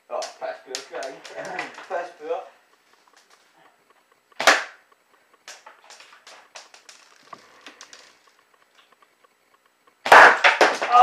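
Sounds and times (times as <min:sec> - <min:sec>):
faint clicks: 0:02.6 - 0:10.0.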